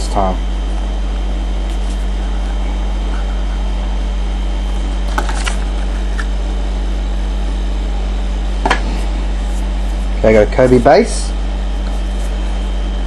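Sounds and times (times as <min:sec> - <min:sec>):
electrical hum and hiss: 0:00.0 - 0:13.0
card pack crinkling: 0:05.0 - 0:06.3.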